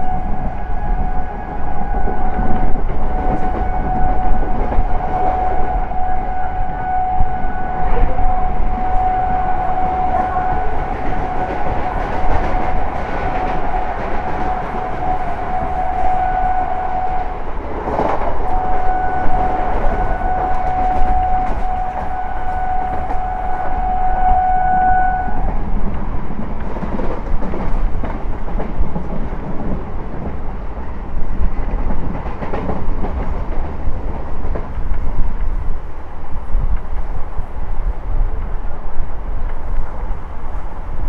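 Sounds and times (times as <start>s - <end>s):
train horn blasts: 0.0s - 25.8s
train running rumble: 0.0s - 41.0s.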